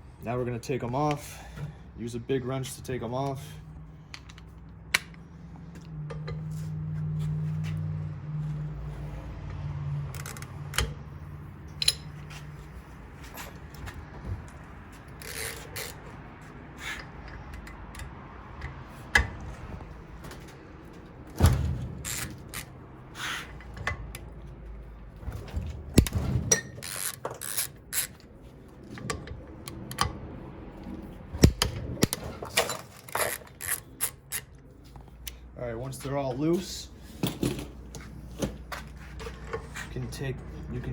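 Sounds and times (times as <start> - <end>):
wrench metal clicks and clanks: 10.1 - 11.0, 11.7 - 12.2, 15.1 - 16.2, 17.0 - 19.4, 22.0 - 22.8, 26.0 - 28.3, 31.4 - 34.6.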